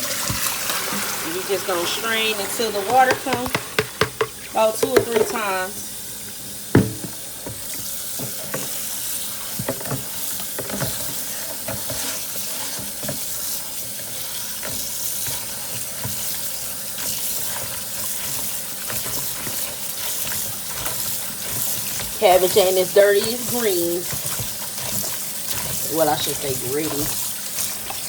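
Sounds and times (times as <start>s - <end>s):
tap water running into strainer: 0.0s - 28.0s
cabbage leaves rustling: 17.2s - 28.0s.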